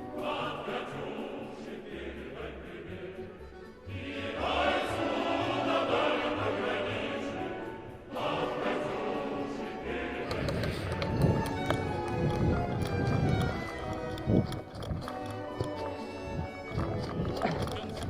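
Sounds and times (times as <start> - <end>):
choir singing music: 0.0 - 13.5.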